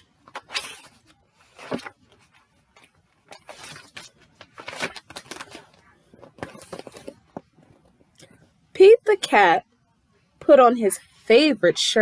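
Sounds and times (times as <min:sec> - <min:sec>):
paper pages rustling: 0:00.0 - 0:08.0.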